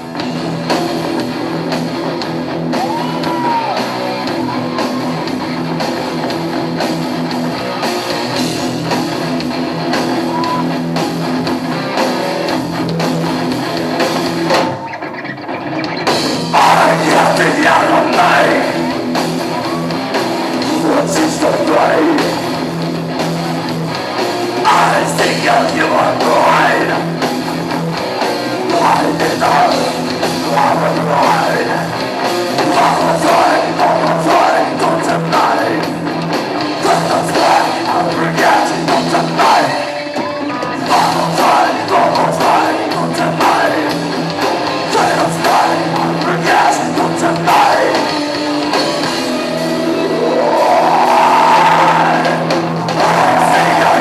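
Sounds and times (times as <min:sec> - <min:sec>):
live rock band playing: 0:00.0 - 0:54.0
person singing: 0:16.5 - 0:19.9, 0:20.6 - 0:22.4, 0:24.6 - 0:27.2, 0:28.6 - 0:32.0, 0:32.6 - 0:36.1, 0:36.7 - 0:44.2, 0:44.8 - 0:48.2, 0:49.3 - 0:54.0.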